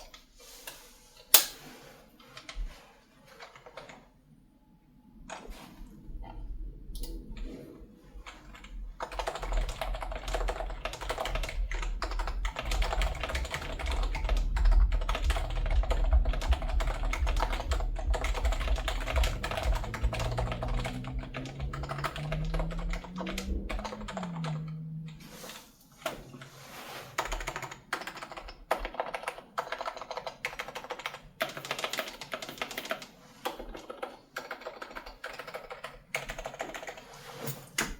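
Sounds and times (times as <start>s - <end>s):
low rumble: 5.9s - 25.3s
keyboard typing: 8.2s - 26.4s, 27.2s - 37.1s.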